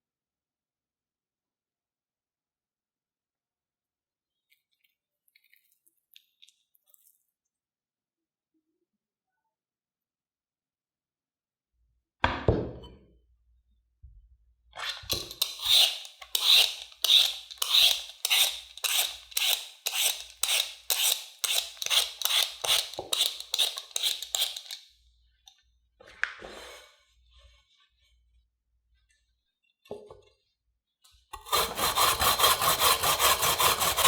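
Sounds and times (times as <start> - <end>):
knock on work surface: 12.2 - 13.0
potato being scraped: 15.1 - 24.8, 31.4 - 34.0.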